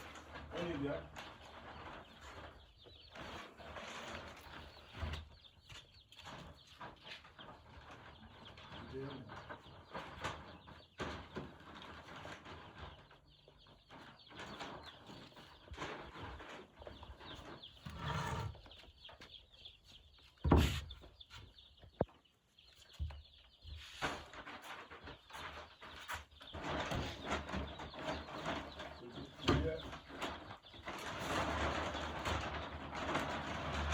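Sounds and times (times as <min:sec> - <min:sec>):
rustling and small knocks: 0:00.0 - 0:18.0, 0:18.6 - 0:33.9
chicks cheeping: 0:00.0 - 0:33.9.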